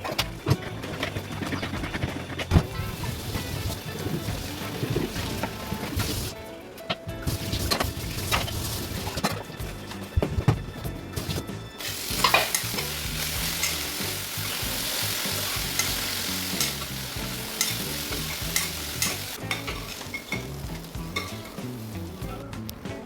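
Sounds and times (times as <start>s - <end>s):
food sizzling in a pan: 11.8s - 22.3s
stirring clicks: 12.1s - 14.7s, 15.3s - 21.7s.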